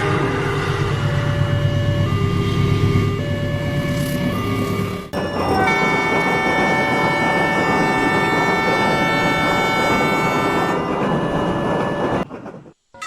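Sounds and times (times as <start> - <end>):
train rumbling: 0.0 - 13.0
train horn chord: 5.6 - 11.1.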